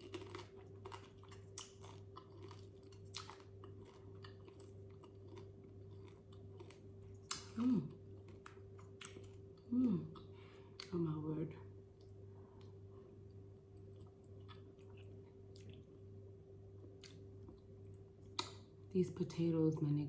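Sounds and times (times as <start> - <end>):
wet chewing: 0.0 - 10.9, 12.0 - 15.9
voice-like sounds from eater: 7.4 - 8.0.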